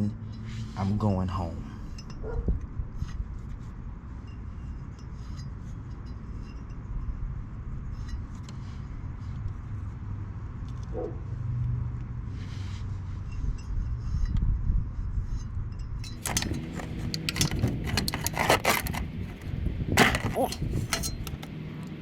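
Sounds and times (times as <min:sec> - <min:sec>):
light metallic clinks: 0:20.0 - 0:21.5.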